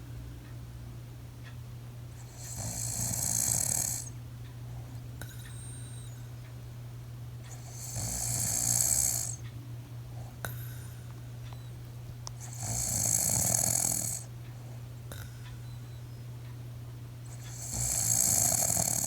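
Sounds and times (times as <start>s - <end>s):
steady low hum: 0.0s - 19.0s
person snoring: 2.3s - 4.1s, 7.6s - 9.4s, 12.4s - 14.3s, 17.3s - 19.0s.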